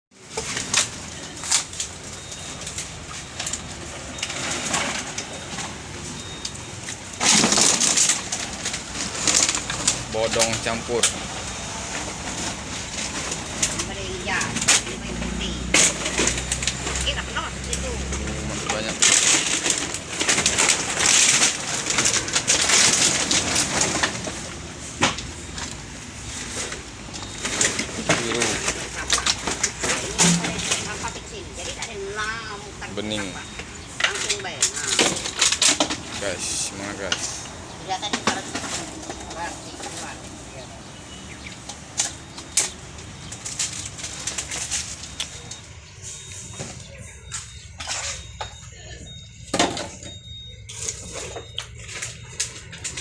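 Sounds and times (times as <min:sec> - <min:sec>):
rustling: 0:00.2 - 0:32.4
plastic bottles crinkling and clattering: 0:00.2 - 0:53.0.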